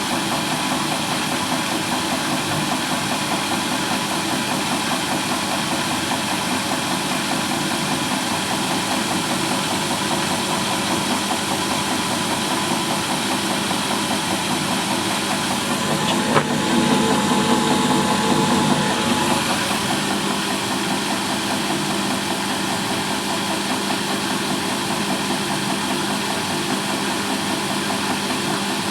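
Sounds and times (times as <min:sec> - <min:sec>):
washing machine drum spinning: 0:13.8 - 0:21.6.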